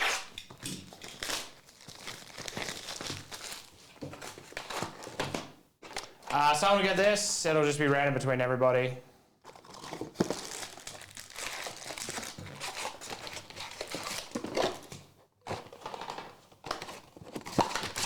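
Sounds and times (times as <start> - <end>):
foil wrappers crinkling and tearing: 0.0 - 5.2, 9.5 - 18.0.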